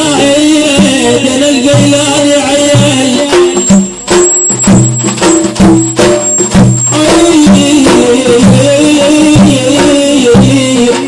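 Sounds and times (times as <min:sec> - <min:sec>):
busy percussion beat: 0:00.0 - 0:11.0
held-note melody: 0:03.1 - 0:08.0.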